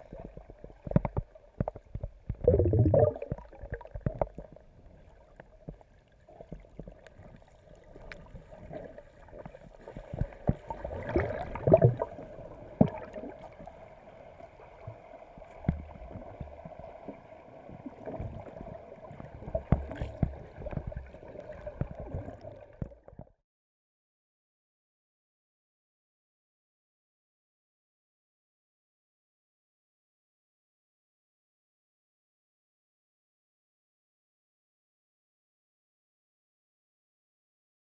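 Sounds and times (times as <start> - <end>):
water gurgling and splashing: 0.0 - 23.3.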